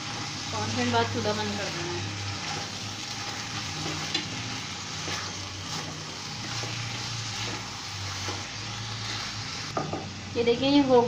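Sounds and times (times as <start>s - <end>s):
gravy sizzling in a pan: 0.0s - 11.0s.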